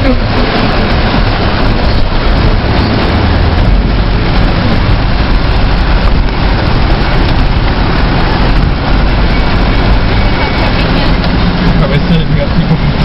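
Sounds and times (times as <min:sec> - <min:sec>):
car engine humming: 0:00.0 - 0:13.0
heavy rain pouring: 0:00.0 - 0:13.0.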